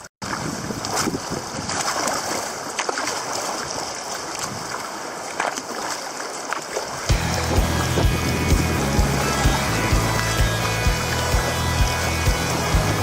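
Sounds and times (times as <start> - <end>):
water splashing around kayak: 0.0 - 13.0
wind: 0.0 - 13.0
background music with steady beat: 7.1 - 13.0.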